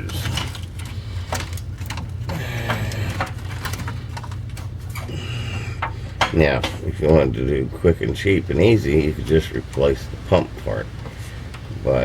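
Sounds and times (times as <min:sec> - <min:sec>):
hose fittings clicking and scraping: 0:00.0 - 0:07.6
steady low rumble: 0:00.0 - 0:12.0.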